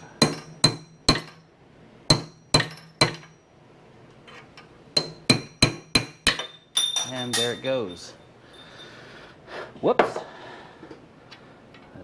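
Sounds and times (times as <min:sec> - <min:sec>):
hammer striking steel punch: 0:00.0 - 0:01.4, 0:02.1 - 0:03.4, 0:05.0 - 0:07.6.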